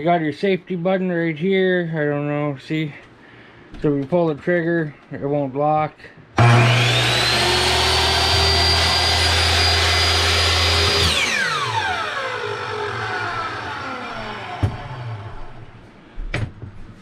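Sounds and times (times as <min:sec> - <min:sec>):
miter saw motor whine: 0:06.4 - 0:15.6.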